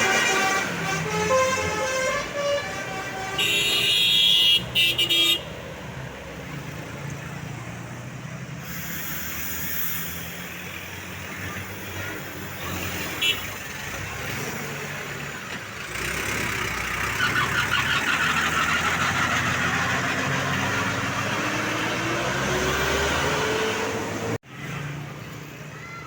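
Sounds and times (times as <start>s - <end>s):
bus horn playing a melody: 0.0s - 5.6s
bus engine rumble: 0.0s - 26.0s.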